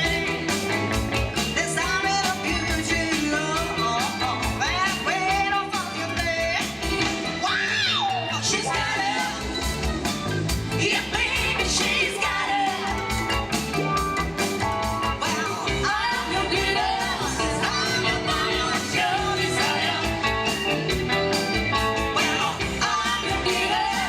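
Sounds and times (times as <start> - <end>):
pop-rock band playing: 0.0 - 24.0
person singing: 1.5 - 9.8, 10.7 - 13.2, 15.1 - 20.7, 22.0 - 24.0.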